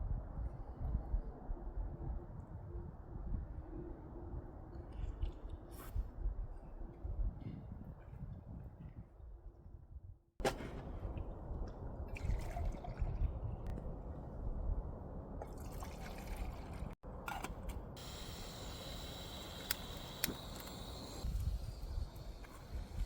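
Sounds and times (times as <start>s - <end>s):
steady low rumble: 10.5s - 15.6s
liquid pouring: 15.4s - 16.9s.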